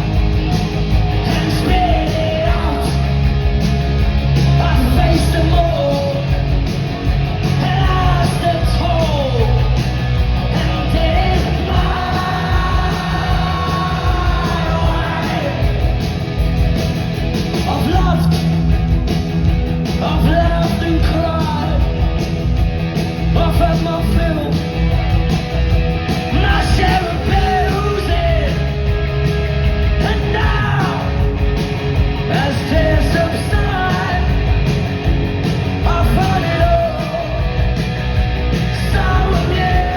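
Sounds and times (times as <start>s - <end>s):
punk rock band playing: 0.0s - 39.9s
shouted vocals: 10.5s - 15.9s.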